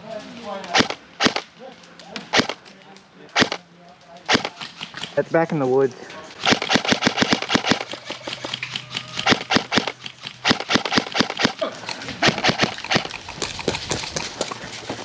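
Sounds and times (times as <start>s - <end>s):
airsoft gun shots: 0.7s - 1.5s, 2.3s - 2.6s, 3.4s - 3.6s, 4.3s - 5.0s, 6.4s - 11.6s, 12.2s - 13.1s.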